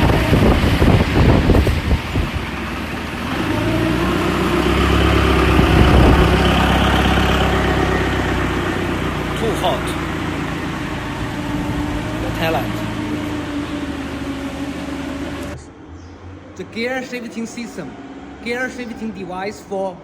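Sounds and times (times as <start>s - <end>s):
vehicle engine running: 0.0s - 15.7s.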